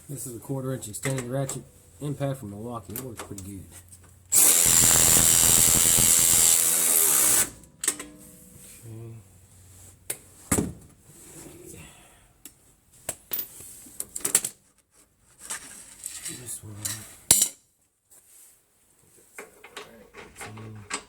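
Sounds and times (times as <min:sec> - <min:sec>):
cordless ratchet running: 0:04.3 - 0:07.6.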